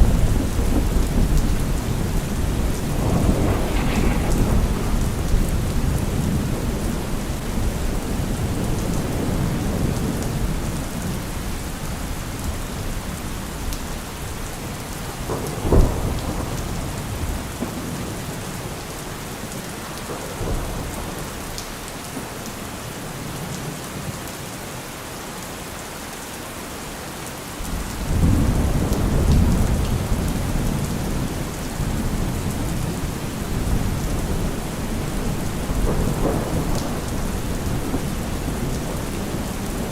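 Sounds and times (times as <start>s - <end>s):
sharp thunder crack: 0.0s - 9.9s
rolling thunder: 0.0s - 18.9s, 27.7s - 39.9s
steady rain: 0.0s - 39.9s.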